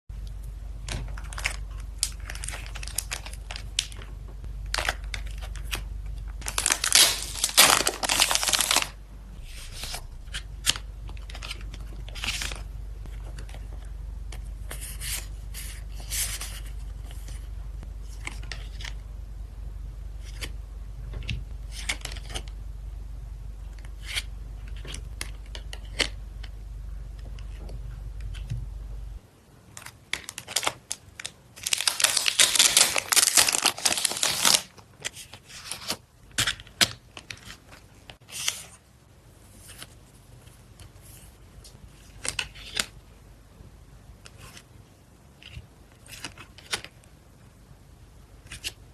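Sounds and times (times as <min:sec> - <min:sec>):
steady low hum: 0:00.1 - 0:48.9
plastic wrap and paper tearing: 0:06.4 - 0:12.6, 0:30.2 - 0:34.8.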